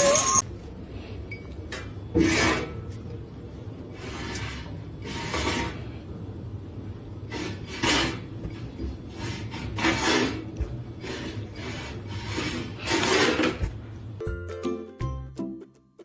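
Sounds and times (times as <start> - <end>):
rasping scratching strokes: 7.3 - 8.3, 9.1 - 13.7.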